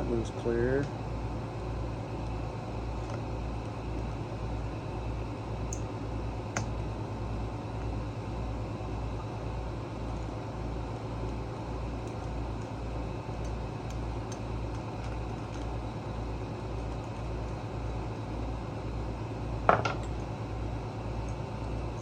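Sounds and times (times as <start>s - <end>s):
low shop hum: 0.0s - 22.0s
metal part set down clink: 19.7s - 20.2s.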